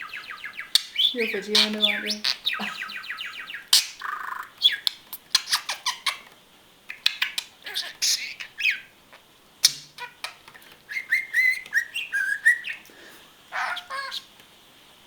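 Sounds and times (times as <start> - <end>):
budgerigar chattering and warbling: 0.0 - 6.2, 6.9 - 8.9, 9.6 - 10.4, 13.5 - 14.3.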